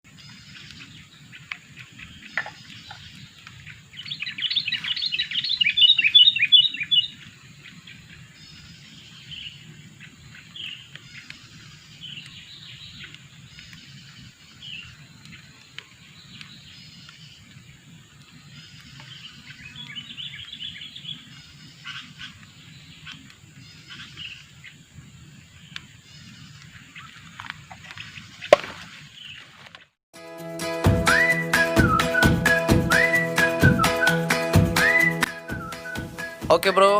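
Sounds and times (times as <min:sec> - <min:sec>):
bird chattering calls: 0:00.2 - 0:07.2.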